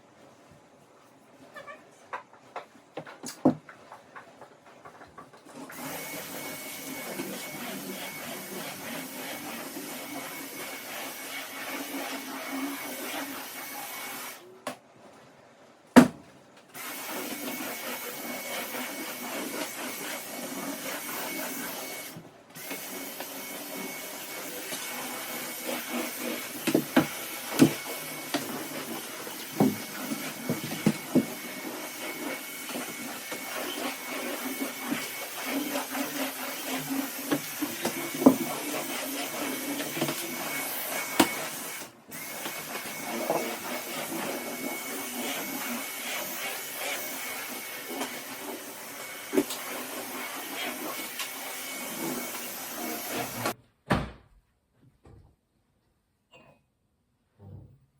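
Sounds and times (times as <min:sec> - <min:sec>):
vacuum cleaner running: 0:05.6 - 0:14.4, 0:16.8 - 0:53.6.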